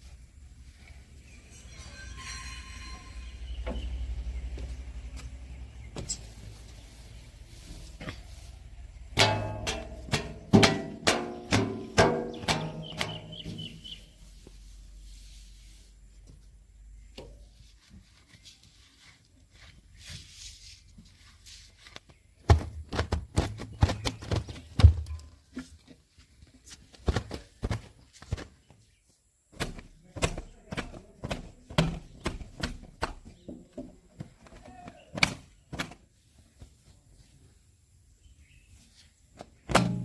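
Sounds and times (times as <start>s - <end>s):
irregular thuds and knocks: 9.1s - 13.9s, 22.4s - 25.4s, 29.5s - 34.6s, 39.4s - 40.0s.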